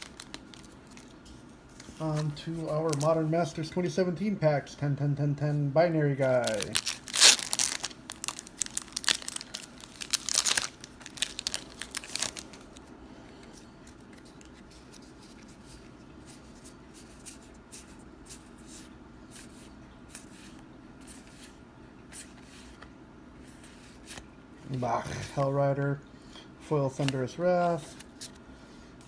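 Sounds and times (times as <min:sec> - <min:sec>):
foil wrapper tearing and crinkling: 0:00.0 - 0:01.1, 0:06.3 - 0:12.8.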